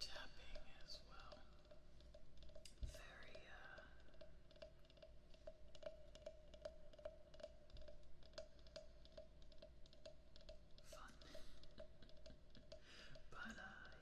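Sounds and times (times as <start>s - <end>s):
tapping on wooden frog: 0.6s - 14.0s.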